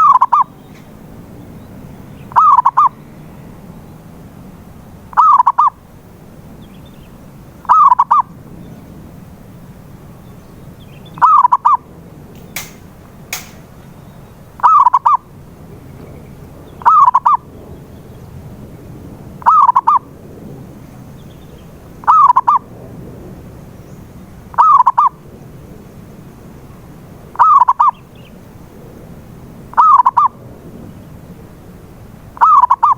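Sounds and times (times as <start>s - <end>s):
dove cooing: 0.0s - 1.1s, 2.1s - 3.3s, 5.1s - 5.8s, 7.6s - 8.3s, 11.2s - 11.8s, 14.6s - 15.3s, 15.9s - 17.5s, 19.4s - 20.1s, 22.0s - 22.7s, 24.5s - 25.2s, 27.4s - 28.0s, 29.7s - 30.4s, 32.4s - 32.9s
sharp clicks: 12.3s - 13.7s.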